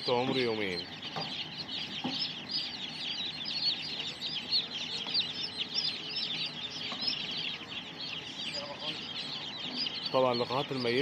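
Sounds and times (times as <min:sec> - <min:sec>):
chicks peeping: 0:00.0 - 0:11.0.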